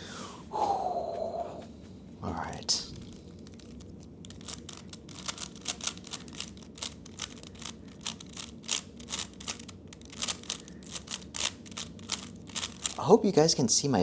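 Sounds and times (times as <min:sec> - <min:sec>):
plastic puzzle cube clicks: 0:03.4 - 0:13.0.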